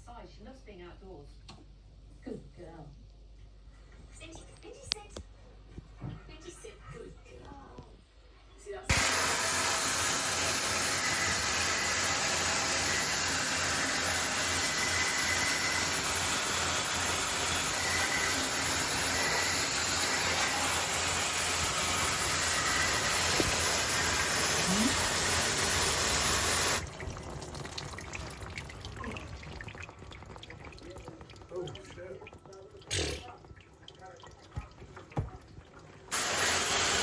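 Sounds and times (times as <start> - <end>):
water spray hissing: 8.9 - 27.1, 36.1 - 37.0
faint dripping: 26.9 - 36.0.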